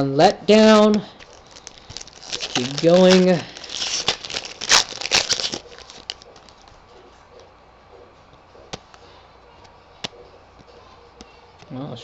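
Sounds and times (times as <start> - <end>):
foil wrapper crinkling: 0.7 - 6.7.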